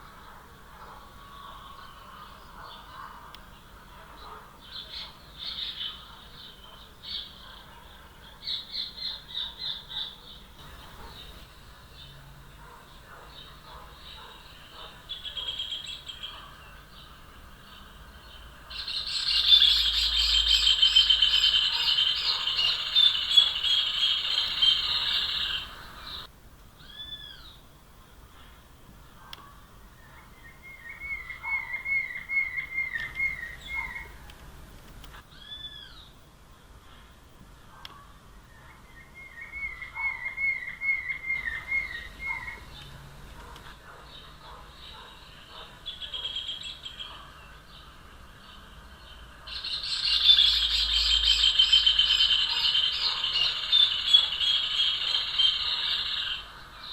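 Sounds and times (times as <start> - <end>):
bird singing fast repeated notes: 12.9 - 27.6, 30.0 - 34.2, 49.5 - 56.9.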